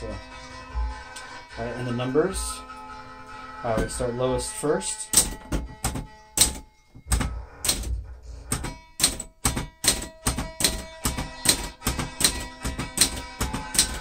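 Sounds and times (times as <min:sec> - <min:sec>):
typewriter keystrokes: 0:05.2 - 0:07.9, 0:08.5 - 0:14.0.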